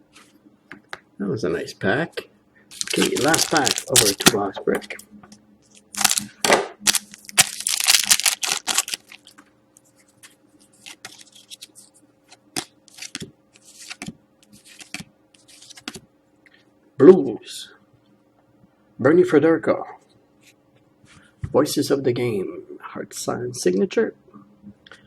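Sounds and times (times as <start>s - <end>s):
wrapper tearing and crinkling: 2.7s - 4.4s, 5.7s - 9.4s, 12.6s - 13.2s
cards rustling: 2.7s - 5.0s, 5.7s - 6.3s, 6.9s - 9.4s, 10.1s - 16.0s.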